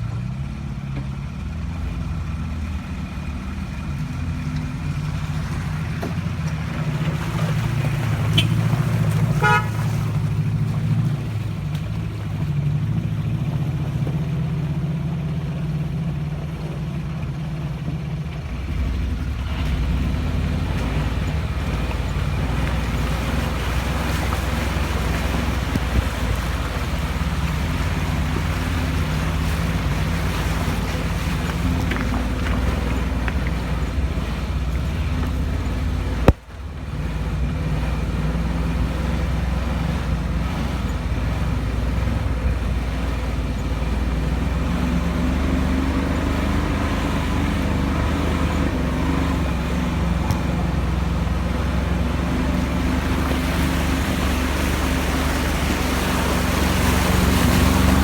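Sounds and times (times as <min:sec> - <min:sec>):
off-road vehicle engine running: 0:00.0 - 0:58.0
short horn toot: 0:08.3 - 0:10.1.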